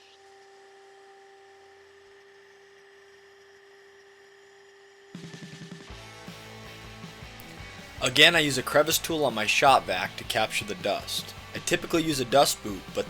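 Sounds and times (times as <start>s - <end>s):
router spindle whining: 0.0s - 5.9s, 7.4s - 13.0s
guitar music: 6.2s - 13.0s.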